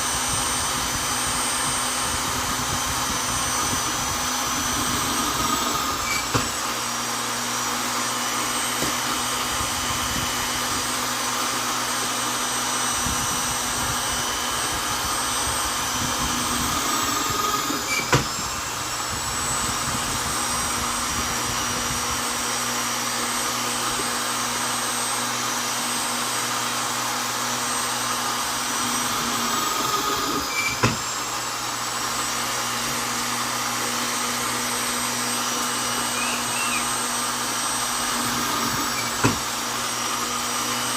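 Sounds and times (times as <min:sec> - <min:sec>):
electric drill motor whine: 0:00.0 - 0:40.9
sharp drill click: 0:01.4 - 0:06.7, 0:12.8 - 0:18.6, 0:28.6 - 0:31.2, 0:35.8 - 0:39.6.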